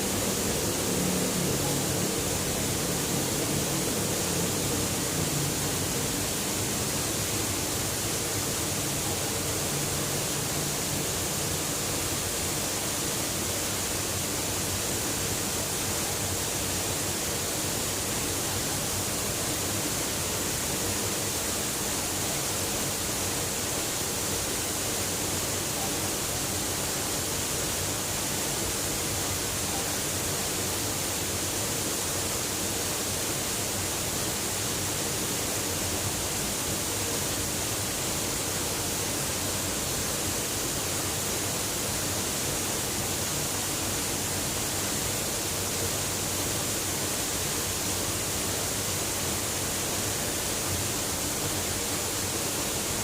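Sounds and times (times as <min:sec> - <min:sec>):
waterfall rushing: 0:00.0 - 0:53.0.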